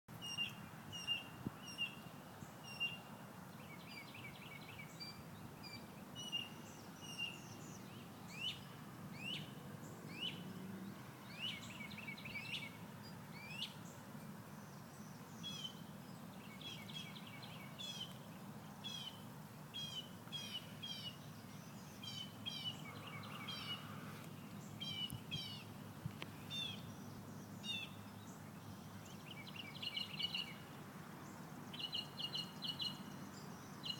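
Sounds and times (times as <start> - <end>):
birds chirping and calling: 19.8 - 30.6.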